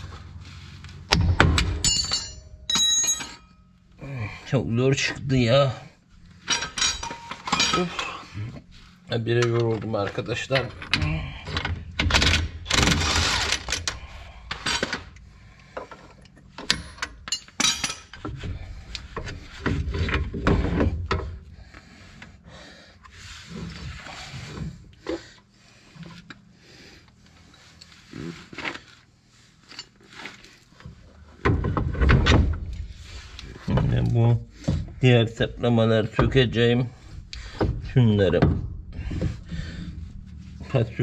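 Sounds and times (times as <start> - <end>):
hand tools clinking on metal parts: 1.6 - 3.8, 6.4 - 8.2, 12.8 - 18.4.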